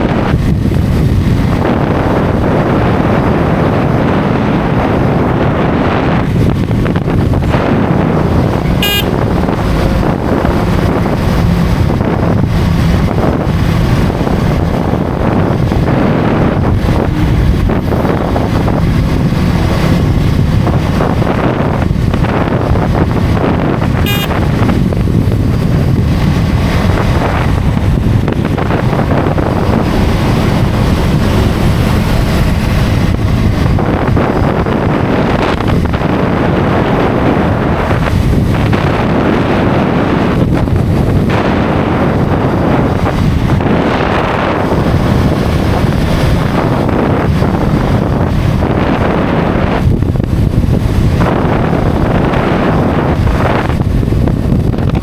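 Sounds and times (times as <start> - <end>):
motorcycle engine and road noise: 0.0 - 55.0
wind buffeting microphone: 0.0 - 55.0
high-pitched blip: 24.1 - 24.4.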